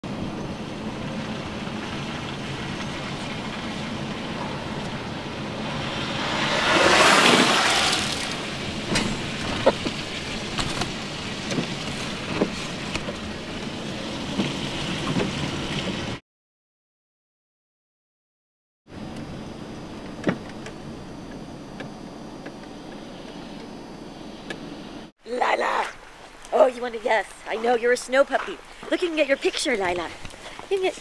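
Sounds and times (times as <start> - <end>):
vehicle passing on wet road: 0.1 - 16.2.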